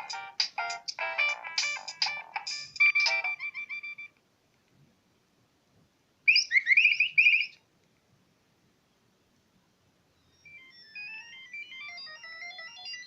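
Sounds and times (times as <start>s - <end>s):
phone ringtone tune: 0.0s - 4.1s, 10.2s - 13.0s
chirpy rising ringtone notes: 0.0s - 4.2s, 6.5s - 7.6s, 10.2s - 13.0s.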